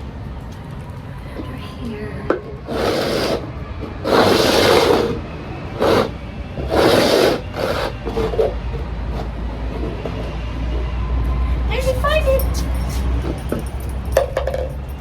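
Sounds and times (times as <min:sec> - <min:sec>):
cups scraping across surface: 0:02.5 - 0:05.2, 0:05.8 - 0:10.9.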